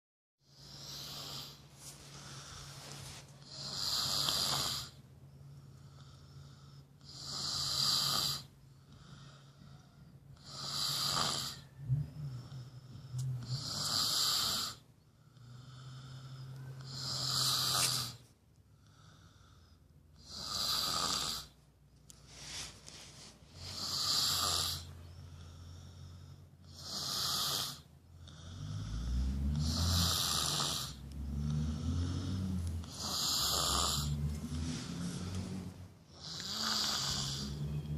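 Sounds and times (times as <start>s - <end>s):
woman snoring: 0.5s - 1.6s, 3.4s - 5.0s, 5.9s - 9.6s, 10.4s - 14.8s, 15.4s - 18.2s, 20.2s - 21.6s, 23.6s - 37.9s.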